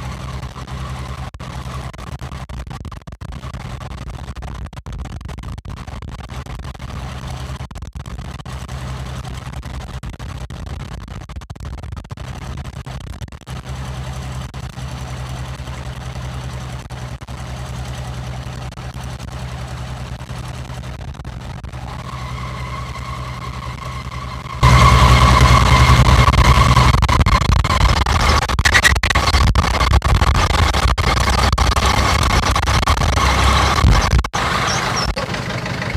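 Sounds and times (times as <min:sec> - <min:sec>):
steady machine whine: 0:14.4 - 0:29.9
harvester engine humming: 0:21.7 - 0:27.1, 0:33.2 - 0:35.9.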